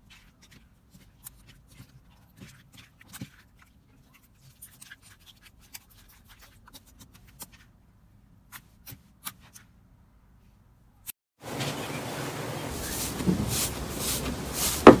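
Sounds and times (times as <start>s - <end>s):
hands squishing slime: 0.0s - 7.7s.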